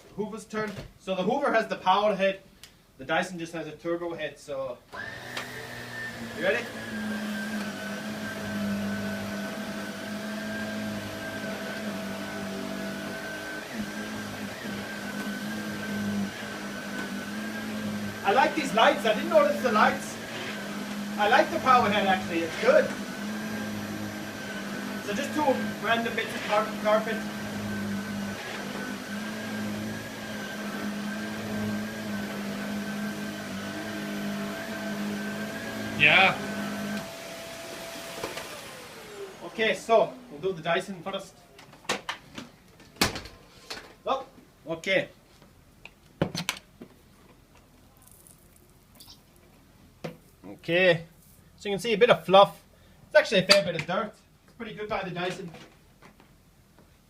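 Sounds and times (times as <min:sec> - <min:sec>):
vacuum cleaner running over carpet: 0:05.0 - 0:41.2.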